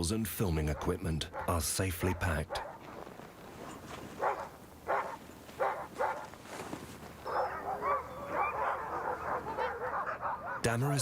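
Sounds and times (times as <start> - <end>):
huskies barking: 0.0 - 11.0
dogs yelping and whining: 4.2 - 6.3, 7.2 - 10.6.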